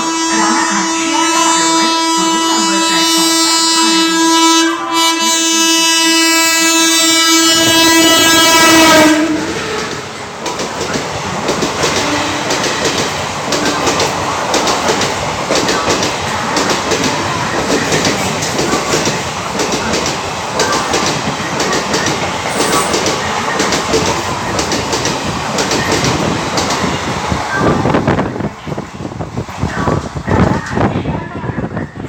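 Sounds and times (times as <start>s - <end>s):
locomotive horn blast: 0.0s - 10.0s
train wheels clattering over rails: 8.3s - 27.4s.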